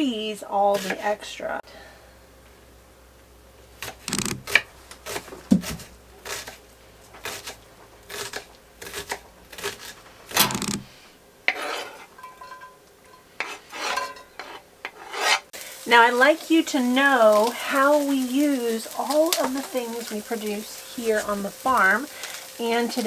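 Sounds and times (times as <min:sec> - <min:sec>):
dishes and pans clanking: 0:11.5 - 0:15.4.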